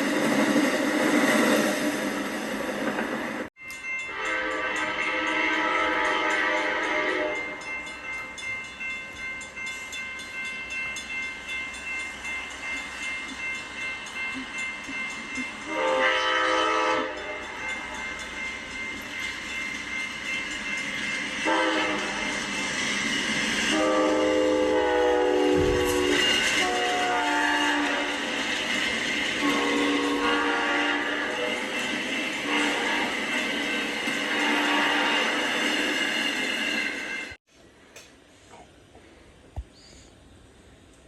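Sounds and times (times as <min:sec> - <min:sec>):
locomotive horn blasts: 0:04.1 - 0:07.6, 0:15.7 - 0:17.7, 0:21.4 - 0:22.4, 0:23.7 - 0:28.2, 0:29.4 - 0:31.7, 0:32.4 - 0:33.2, 0:34.3 - 0:35.3.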